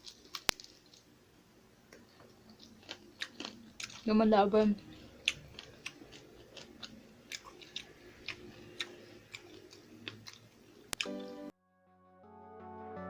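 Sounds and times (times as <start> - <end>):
close-up chewing: 2.0 - 4.2, 4.8 - 11.3
background music: 11.0 - 13.0.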